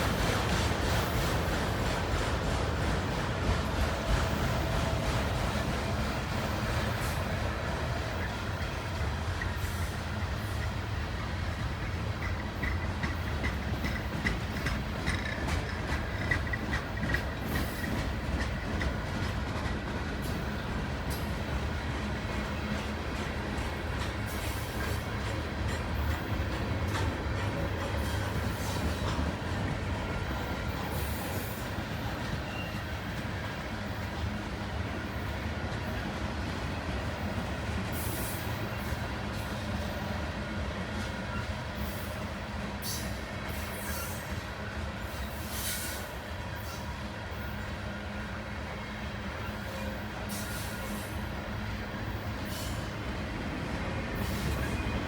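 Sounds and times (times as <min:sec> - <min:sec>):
freight train rumbling past: 0:00.0 - 0:55.0
faint high wheel squeal: 0:30.3 - 0:33.1, 0:42.8 - 0:47.7, 0:48.7 - 0:53.0, 0:54.2 - 0:55.0.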